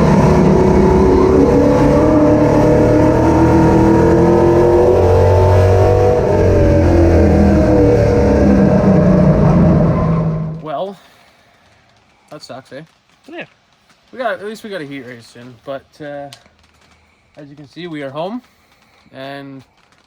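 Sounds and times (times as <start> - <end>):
car engine running: 0.0 - 10.6.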